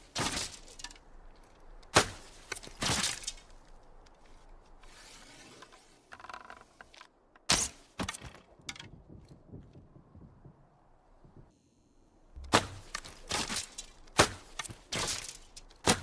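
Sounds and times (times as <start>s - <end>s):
arrow striking with sharp crack: 1.9s - 3.5s, 12.4s - 16.0s.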